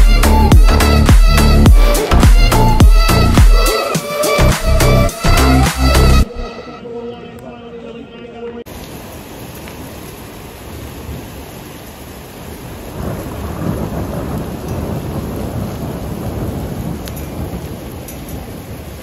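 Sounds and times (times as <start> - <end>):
heavy rain pouring: 0.0 - 6.3, 8.7 - 19.0
thunder rumbling: 8.9 - 19.0.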